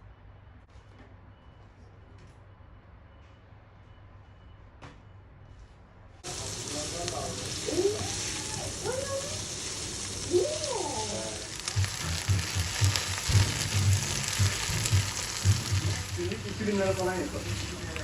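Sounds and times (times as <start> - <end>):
food sizzling in a pan: 6.2 - 18.0.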